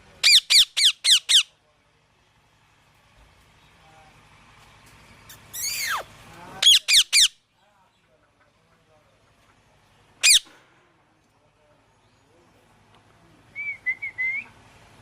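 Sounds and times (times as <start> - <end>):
parrot screeching and squawking: 0.2 - 1.5, 5.3 - 7.4, 10.2 - 10.5.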